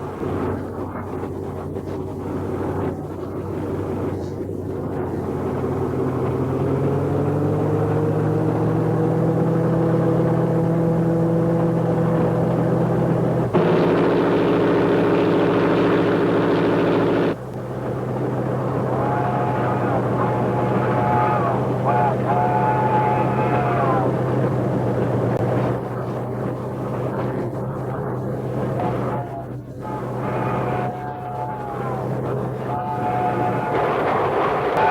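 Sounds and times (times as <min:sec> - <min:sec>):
train motor running: 0:00.0 - 0:34.9
loud buzzy sound: 0:10.6 - 0:34.9.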